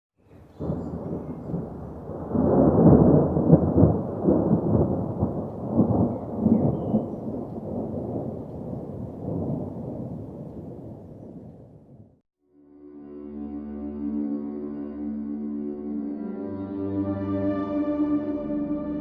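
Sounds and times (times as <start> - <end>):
rolling thunder: 0.3 - 12.2.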